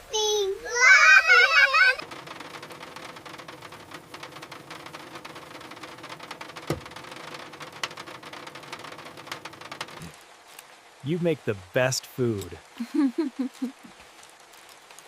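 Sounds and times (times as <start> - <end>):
rain pattering on a roof: 0.1 - 15.0.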